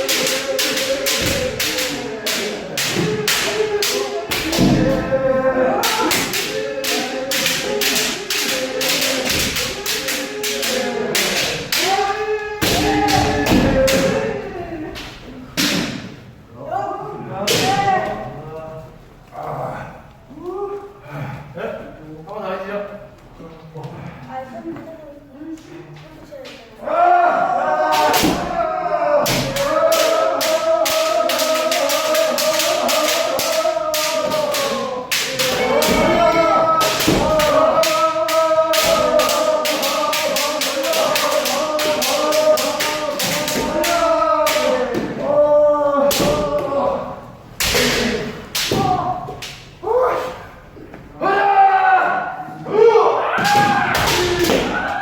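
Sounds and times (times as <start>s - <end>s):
people shouting: 0.0s - 15.9s, 26.8s - 55.0s
bamboo sword strikes clacking: 36.8s - 45.1s.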